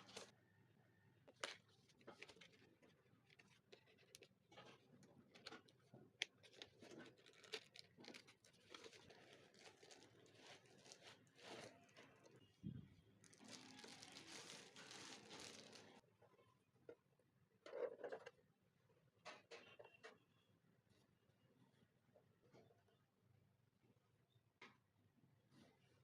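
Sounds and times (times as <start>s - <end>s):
packaging being opened: 0.0s - 0.3s, 5.3s - 12.4s, 13.2s - 16.0s.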